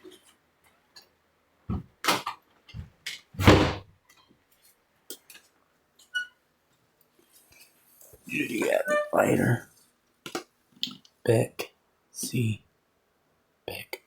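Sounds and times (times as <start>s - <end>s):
objects knocking and thumping: 1.7s - 3.9s.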